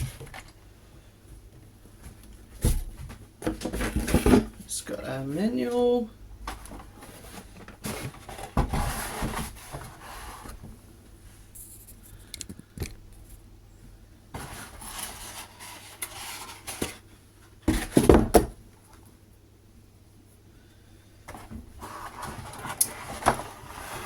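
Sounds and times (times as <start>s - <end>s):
rustling and rubbing: 6.5s - 10.7s, 14.3s - 17.1s, 21.3s - 24.0s.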